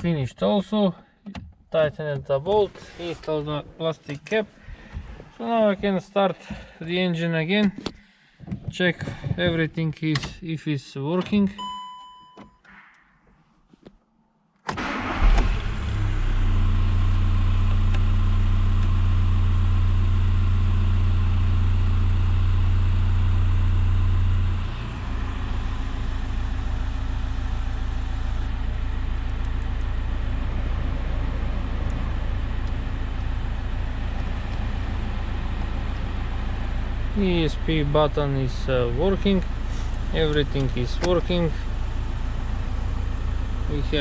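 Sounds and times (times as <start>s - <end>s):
diesel engine starting and idling: 14.7s - 44.0s.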